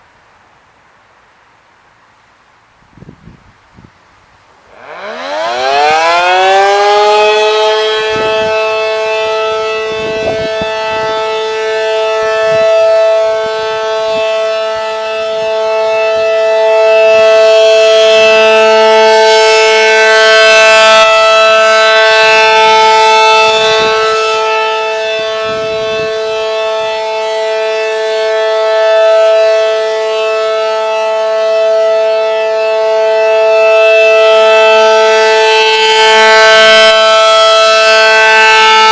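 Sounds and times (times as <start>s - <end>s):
civil defense siren: 3.0s - 38.9s.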